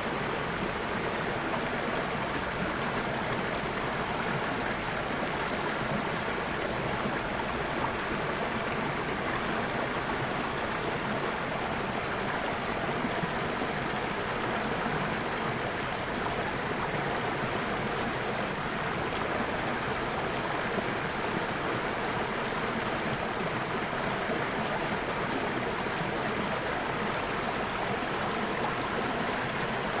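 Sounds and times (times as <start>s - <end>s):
stream water rushing: 0.0s - 30.0s.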